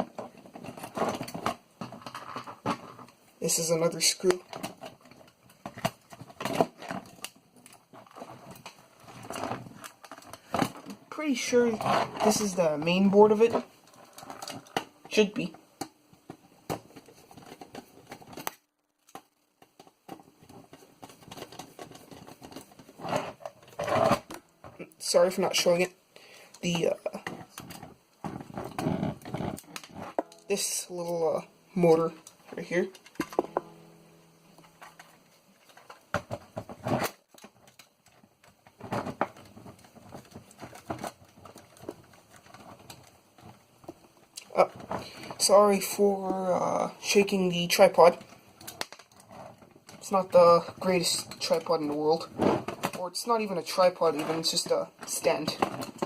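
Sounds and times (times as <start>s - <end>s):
clicks and rattling of parts: 0.0s - 3.2s, 4.0s - 25.9s, 26.5s - 30.8s, 32.0s - 56.0s
small metal and plastic parts clicking: 34.6s - 45.5s, 48.0s - 53.1s.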